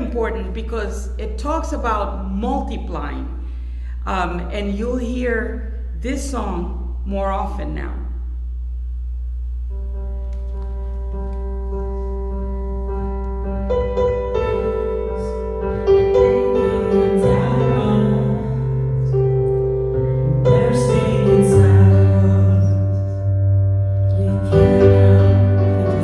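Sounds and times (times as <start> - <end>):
low bass: 7.7 - 26.0
keyboard and piano chords: 9.7 - 26.0.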